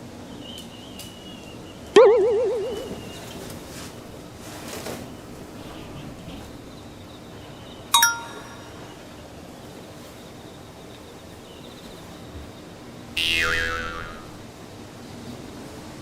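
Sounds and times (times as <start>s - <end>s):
bright metallic ding: 8.0s - 8.6s.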